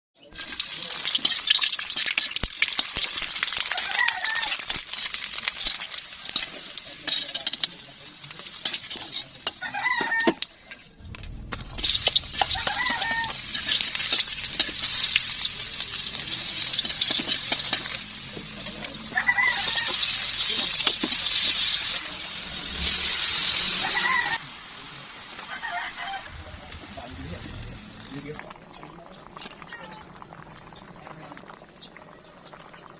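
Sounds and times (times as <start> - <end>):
food sizzling in hot oil: 0.2 - 10.9, 11.6 - 32.9
rooster crowing: 3.7 - 4.6, 9.6 - 10.4, 12.4 - 13.5, 19.0 - 20.2, 23.6 - 24.4, 25.4 - 26.5.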